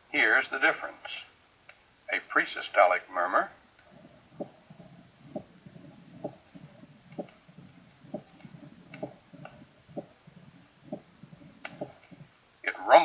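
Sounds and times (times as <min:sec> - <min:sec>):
heartbeat with rumbling murmur: 0:03.7 - 0:12.4
sharp high heart sound: 0:03.8 - 0:12.3.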